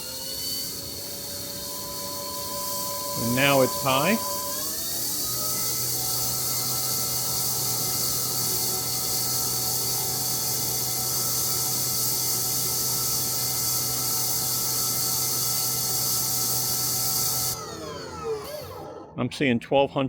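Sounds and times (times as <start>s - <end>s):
pressure washer motor and pump hum: 0.0s - 19.0s
water jet hissing: 1.4s - 4.6s.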